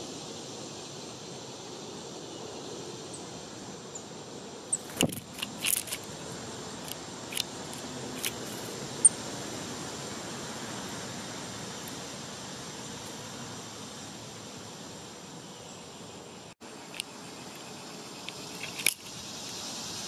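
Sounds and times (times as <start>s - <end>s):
background hiss: 0.0s - 20.0s
songbirds chipping: 2.1s - 9.3s.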